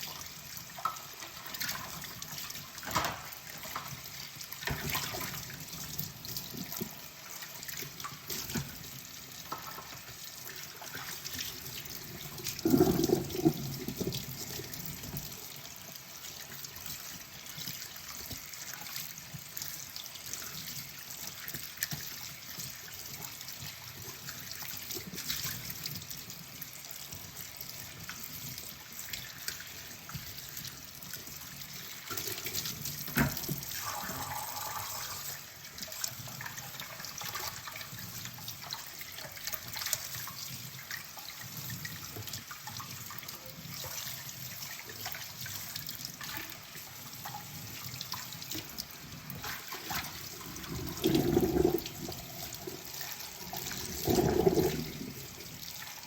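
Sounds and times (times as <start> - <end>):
tap running into sink: 12.6 - 15.3, 33.0 - 35.4.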